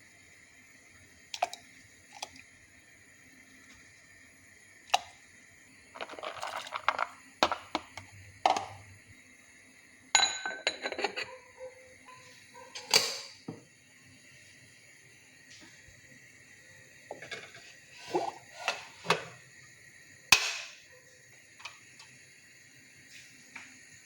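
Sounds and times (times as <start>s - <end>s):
kitchenware clinking and knocking: 10.2s - 11.4s, 12.7s - 13.6s.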